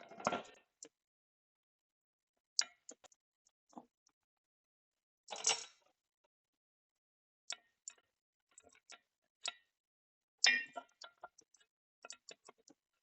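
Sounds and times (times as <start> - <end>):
metallic clicks of tools: 5.3 - 5.8.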